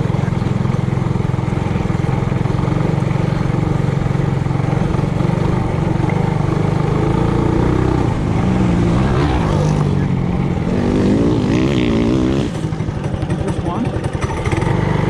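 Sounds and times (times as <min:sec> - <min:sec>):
mini bike engine running: 0:00.0 - 0:15.0.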